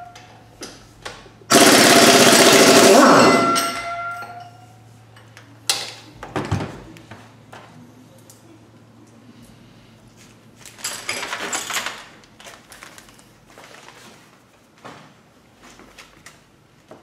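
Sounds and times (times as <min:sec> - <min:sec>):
tools and metal parts clattering: 0:02.8 - 0:06.7, 0:10.6 - 0:14.0.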